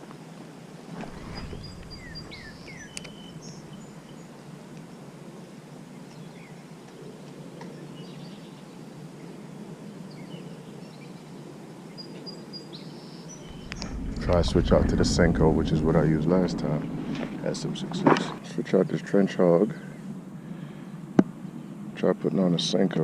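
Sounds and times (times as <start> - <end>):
low background rumble: 0.9 - 4.4, 13.4 - 19.2
bird chirps: 1.3 - 4.4.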